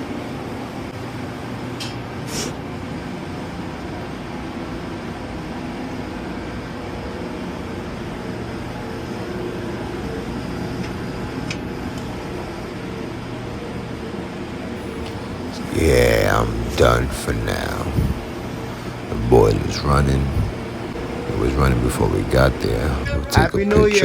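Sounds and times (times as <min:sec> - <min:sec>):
boiler rumbling: 0:14.8 - 0:24.0.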